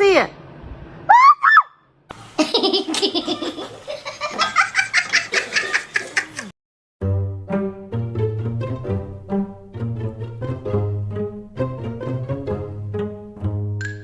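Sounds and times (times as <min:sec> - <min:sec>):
person laughing hard: 0:02.4 - 0:06.5
plucked string music: 0:07.0 - 0:14.0.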